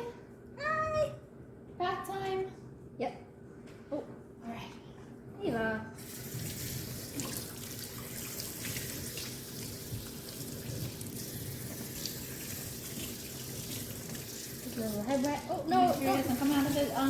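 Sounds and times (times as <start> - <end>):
water running from faucet into sink: 6.0 - 17.0.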